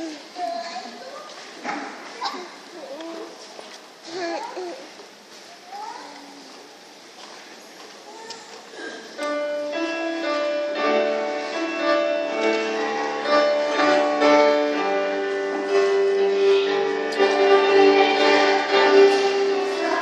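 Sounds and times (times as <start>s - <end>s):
soft room murmur: 0.0s - 10.4s
keyboard playing slow chords: 9.2s - 20.0s.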